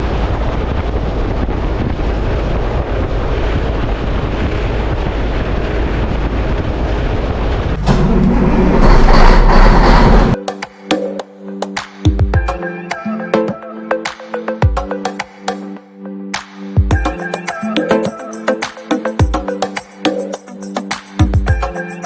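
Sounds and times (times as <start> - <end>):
low hum: 0.0 - 10.4
tractor and hay baler running: 7.7 - 10.4
music: 10.3 - 22.0.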